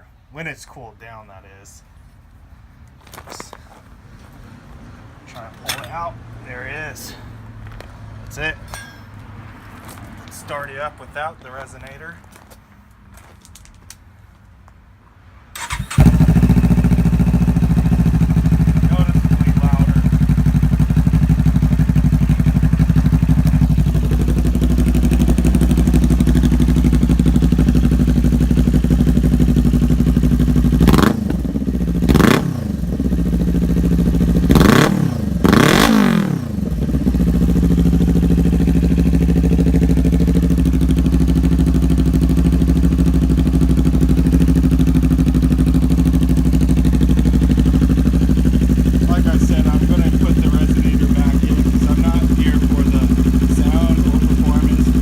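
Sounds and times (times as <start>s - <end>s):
motorcycle engine idling: 15.6s - 55.0s
motorcycle throttle blips: 15.6s - 55.0s.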